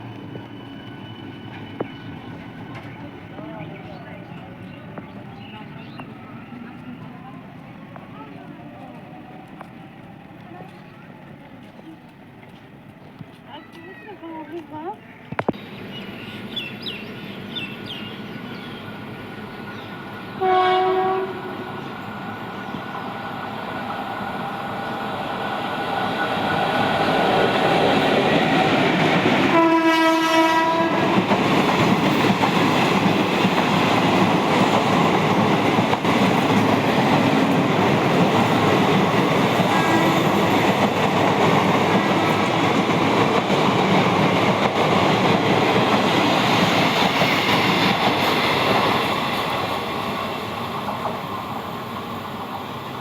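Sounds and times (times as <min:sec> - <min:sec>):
train running noise: 0:00.0 - 0:53.0
train horn blasts: 0:20.4 - 0:21.7, 0:29.5 - 0:31.3.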